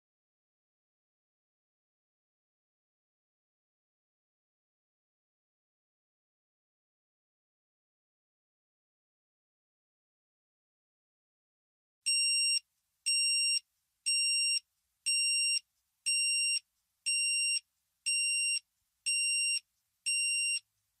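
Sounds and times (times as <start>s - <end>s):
high-pitched timer beeps: 12.1s - 20.6s.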